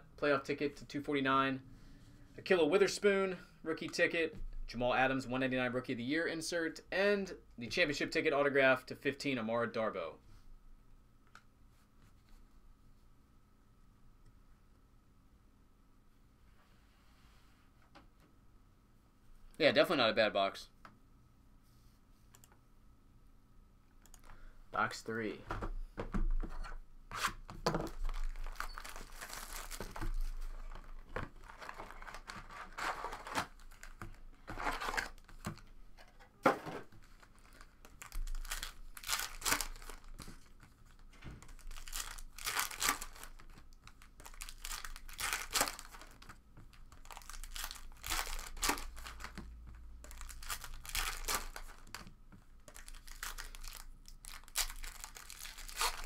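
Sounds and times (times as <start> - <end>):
plastic wrapping crinkling and tearing: 27.9 - 35.6, 37.0 - 49.4, 50.0 - 56.0.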